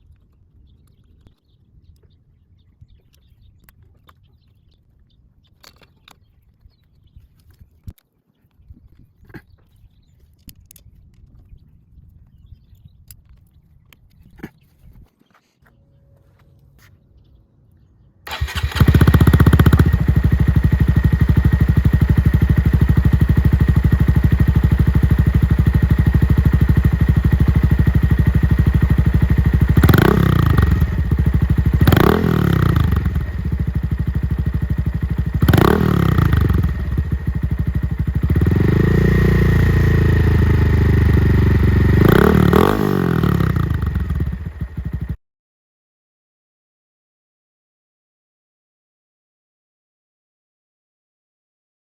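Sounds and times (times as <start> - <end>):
motorcycle engine idling and revving: 18.3 - 45.2.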